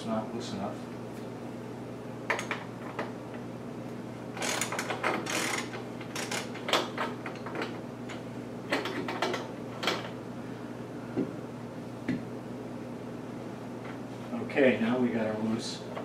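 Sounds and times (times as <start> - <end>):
wrench clicking and scraping metal: 4.4 - 7.5.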